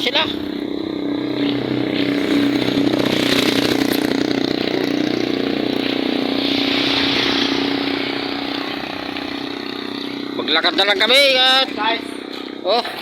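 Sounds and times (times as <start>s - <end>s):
small engine idling: 8.1s - 13.0s.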